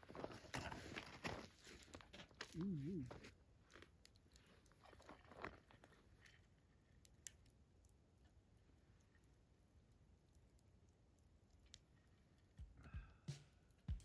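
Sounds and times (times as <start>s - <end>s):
faint sharp clicks and crackles: 3.2s - 12.8s.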